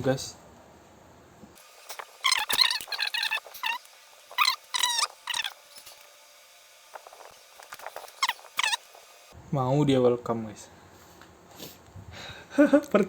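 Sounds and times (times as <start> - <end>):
small animal squeaking: 2.0 - 6.0, 7.0 - 9.0.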